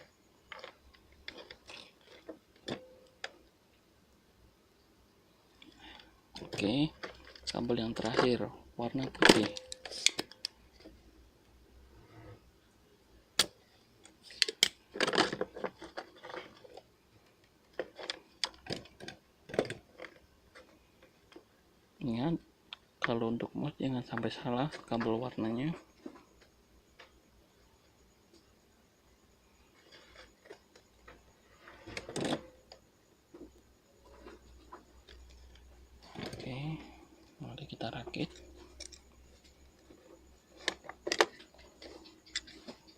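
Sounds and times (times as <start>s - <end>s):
small tools being handled: 0.4s - 3.5s, 13.4s - 21.5s, 29.7s - 42.9s.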